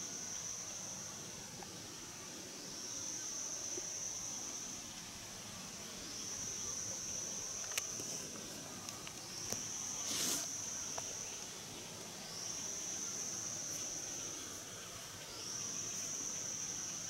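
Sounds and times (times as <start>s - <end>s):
high-pitched insect chorus: 0.0s - 17.0s
short noisy rustle: 10.0s - 10.6s.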